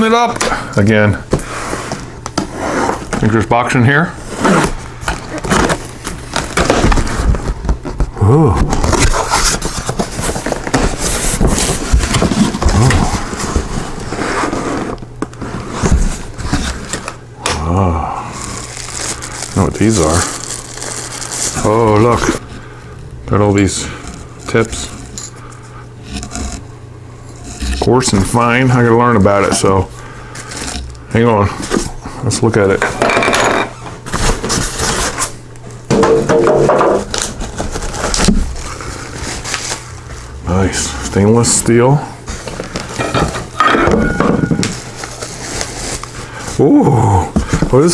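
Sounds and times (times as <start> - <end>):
cardboard box scraping and rustling: 1.3 - 3.4, 4.2 - 17.1, 34.0 - 35.4, 37.0 - 46.6
metal and plastic parts clattering: 42.4 - 46.1.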